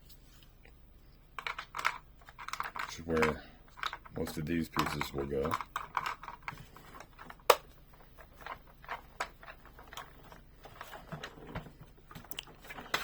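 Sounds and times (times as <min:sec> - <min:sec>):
plastic toy parts clicking: 0:01.4 - 0:11.4
plastic snap: 0:07.4 - 0:07.7.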